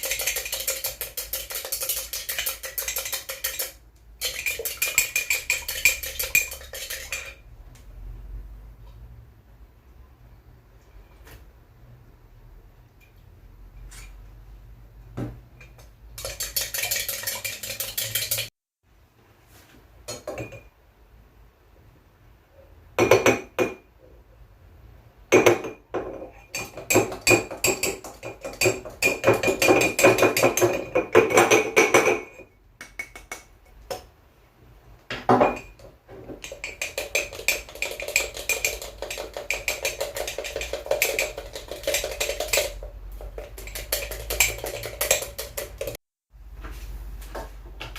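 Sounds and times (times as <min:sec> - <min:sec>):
whisk clicking against bowl: 0:00.0 - 0:07.4, 0:15.8 - 0:18.5, 0:36.4 - 0:46.0.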